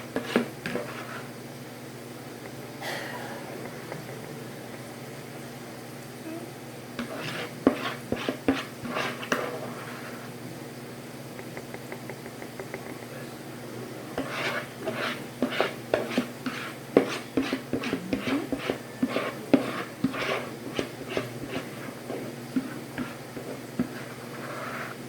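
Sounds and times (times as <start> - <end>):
utensil scraping a pan: 0.0 - 1.4, 7.0 - 10.4, 14.2 - 25.0.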